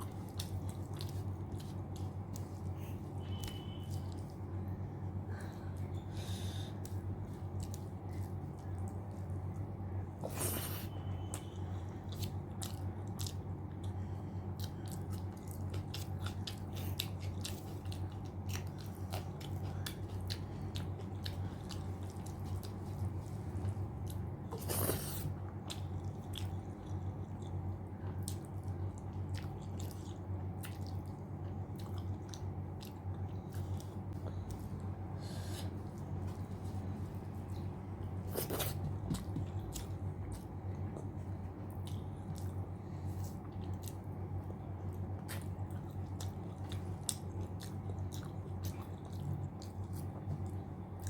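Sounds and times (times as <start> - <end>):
steady low hum: 0.0 - 51.0
chewing and wet mouth clicks: 6.8 - 9.6, 11.2 - 14.0, 14.6 - 34.9, 38.3 - 44.1, 44.8 - 51.0.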